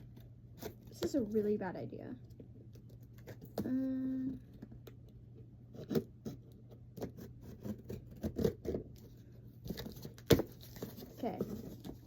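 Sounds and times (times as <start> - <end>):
knife scraping cardboard parcel: 5.8 - 12.0.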